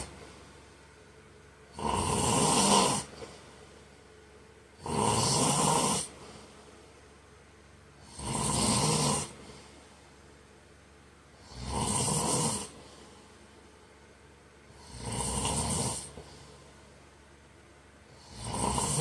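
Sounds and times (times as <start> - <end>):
man snoring: 0.0 - 0.2, 1.7 - 3.4, 4.8 - 6.5, 8.0 - 9.7, 11.4 - 13.2, 14.7 - 16.4, 18.1 - 19.0.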